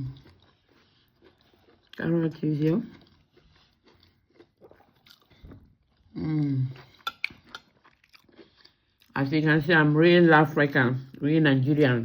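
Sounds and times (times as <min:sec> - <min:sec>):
person chewing food: 0:00.0 - 0:09.2
wet mouth clicks: 0:06.8 - 0:07.7.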